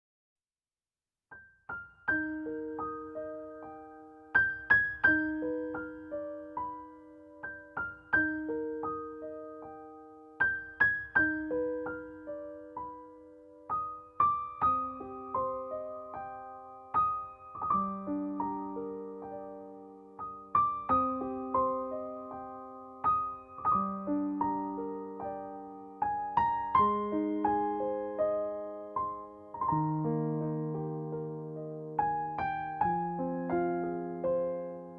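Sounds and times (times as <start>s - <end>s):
gentle solo piano: 1.3s - 34.9s.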